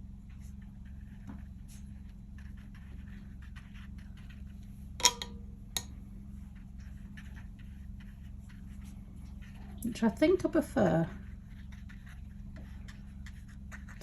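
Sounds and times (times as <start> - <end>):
steady low hum: 0.0 - 14.0
brush dabbing and scraping paper: 0.2 - 5.0, 6.0 - 14.0.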